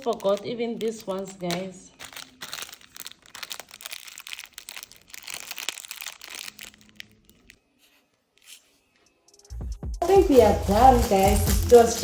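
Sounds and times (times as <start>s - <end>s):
plastic packaging crinkling: 0.0s - 7.8s.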